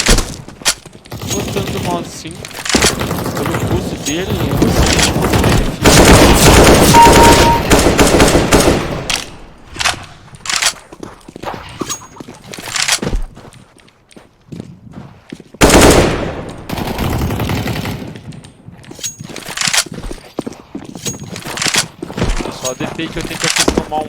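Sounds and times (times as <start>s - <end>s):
video game automatic gunfire: 2.7s - 9.1s, 15.6s - 18.2s.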